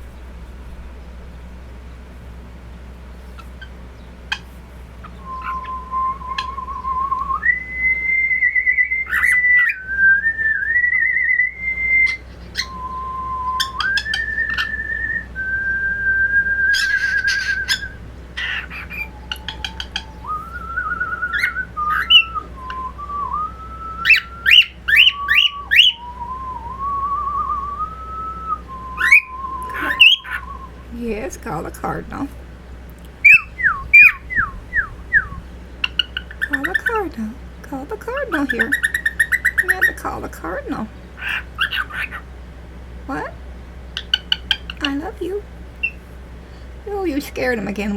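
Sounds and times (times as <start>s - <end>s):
cockatiel chirps: 3.3s - 7.4s, 8.6s - 9.8s, 12.0s - 15.2s, 16.7s - 23.0s, 24.0s - 26.1s, 29.0s - 30.8s, 33.2s - 37.0s, 38.3s - 40.0s, 41.2s - 42.3s, 43.9s - 45.0s, 45.8s - 46.0s
cockatiel whistling: 3.4s - 31.0s, 33.1s - 37.0s, 38.2s - 40.0s, 41.2s - 42.3s, 43.9s - 45.0s, 45.8s - 46.0s.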